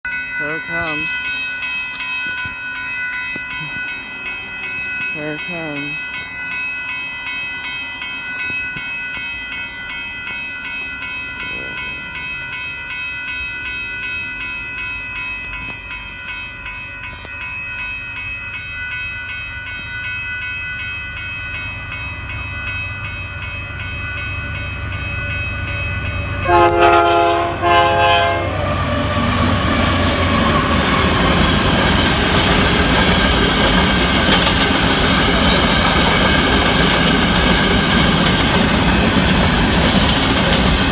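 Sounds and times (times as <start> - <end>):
crossing bell ringing: 0.0 - 40.9
freight train rumbling past: 0.1 - 40.9
locomotive horn blasts: 26.4 - 28.6.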